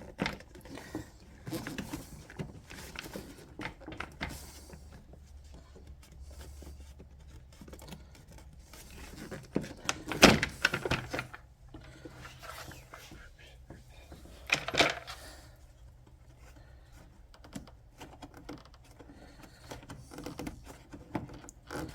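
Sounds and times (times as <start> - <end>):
hands and tools clicking and knocking: 13.6 - 15.2, 16.0 - 21.9.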